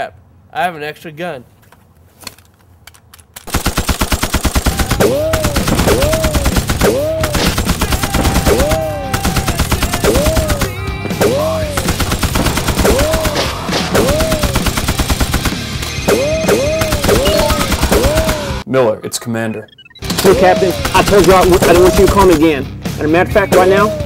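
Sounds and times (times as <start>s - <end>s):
automatic gunfire: 3.4s - 18.6s, 20.1s - 22.5s.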